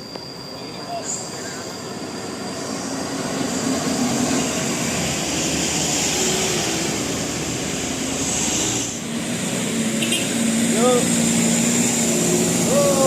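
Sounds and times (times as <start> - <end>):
passing vehicle engine and road noise: 0.0 - 13.0.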